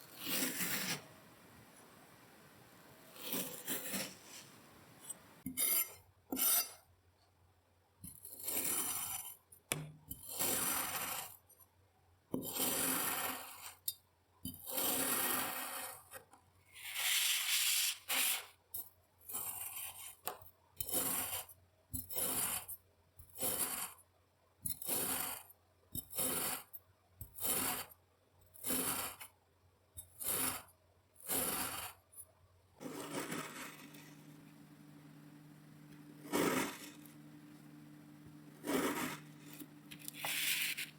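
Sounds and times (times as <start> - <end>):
sand being cut and scraped: 0.0 - 1.1, 3.1 - 4.6, 10.3 - 11.4, 12.5 - 13.8, 14.7 - 16.1, 26.1 - 26.7, 27.4 - 27.9, 28.6 - 29.2, 31.2 - 32.0, 32.8 - 35.0, 35.9 - 37.7, 38.5 - 40.9.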